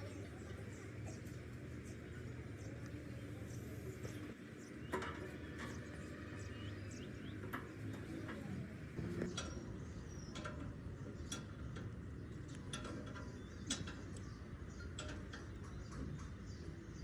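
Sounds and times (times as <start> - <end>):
low hum: 0.0 - 9.5.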